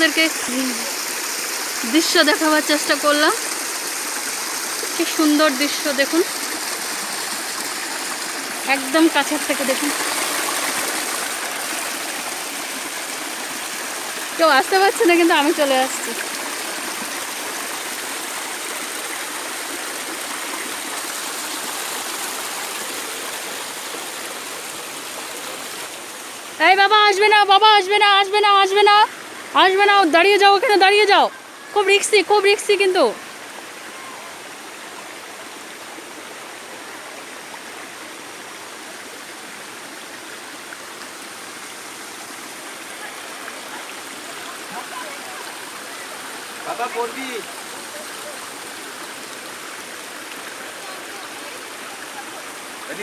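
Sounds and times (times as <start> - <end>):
waterfall splashing onto rocks: 0.0 - 26.8, 40.4 - 53.0.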